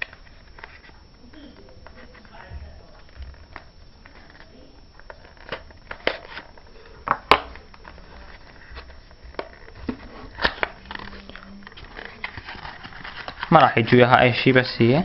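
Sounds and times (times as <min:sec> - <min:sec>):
plastic crinkling: 0:00.0 - 0:14.2
packaging being opened: 0:03.0 - 0:14.1.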